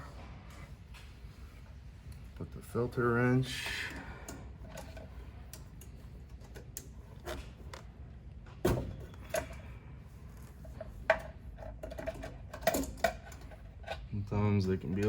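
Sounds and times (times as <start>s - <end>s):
small metallic clicks and knocks: 10.8s - 14.1s.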